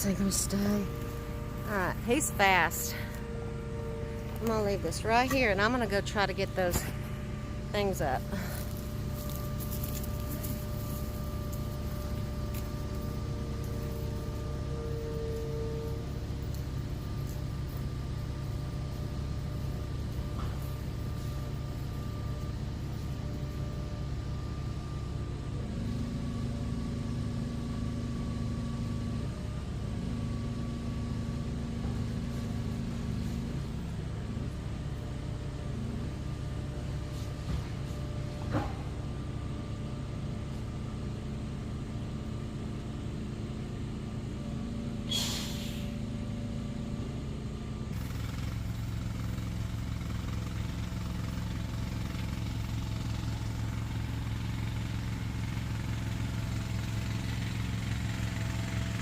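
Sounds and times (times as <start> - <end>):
vehicle engine running: 0.0 - 59.0
short hiss: 45.1 - 45.9.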